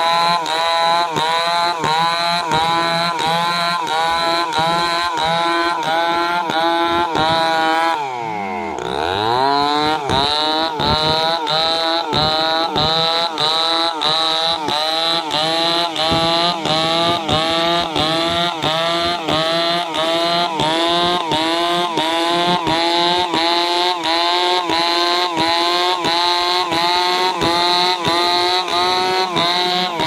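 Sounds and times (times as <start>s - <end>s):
chainsaw cutting log: 0.0s - 30.0s.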